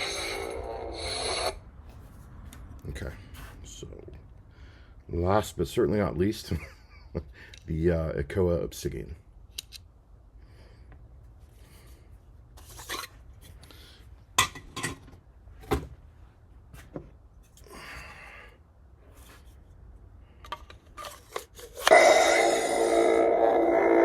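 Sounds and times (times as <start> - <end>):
hard parts clicking and rubbing: 12.6 - 13.6, 20.4 - 22.2.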